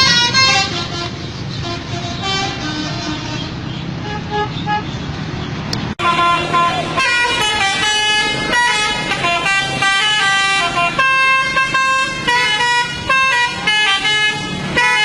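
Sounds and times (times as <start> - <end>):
multi-tone bus horn playing tune: 0.0 - 5.0, 6.0 - 15.0.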